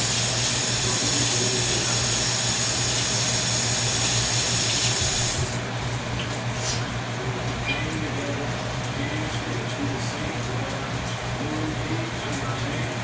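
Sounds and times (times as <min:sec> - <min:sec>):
faucet running: 0:00.0 - 0:05.6.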